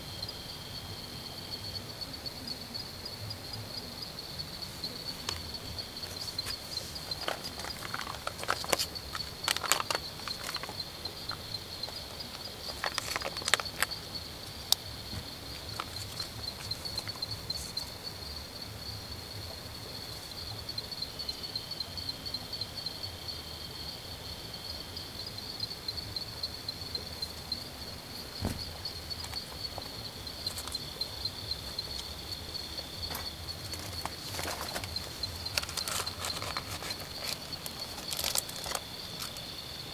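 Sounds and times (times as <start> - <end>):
insects trilling: 0.0 - 39.9
short clicks and rustles: 4.8 - 14.0, 33.1 - 39.4.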